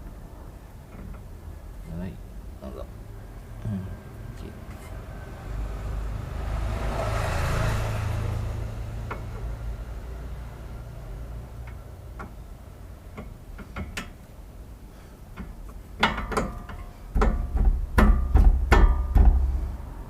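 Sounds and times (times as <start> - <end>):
metal clanking and rattling: 15.3 - 19.8.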